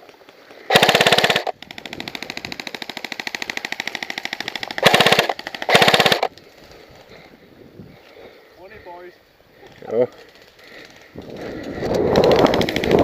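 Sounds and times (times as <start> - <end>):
airsoft guns firing full-auto: 0.7 - 6.3, 12.1 - 13.0.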